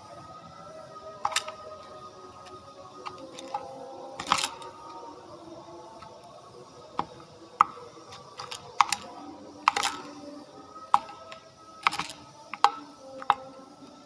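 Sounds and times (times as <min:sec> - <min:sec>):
sharp clicks and taps: 0:07.0 - 0:09.1, 0:09.7 - 0:10.1, 0:11.0 - 0:13.5.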